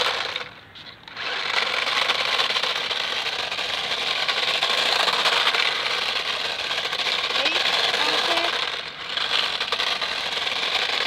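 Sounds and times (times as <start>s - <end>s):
toy car electric motor buzzing: 0.0s - 11.0s.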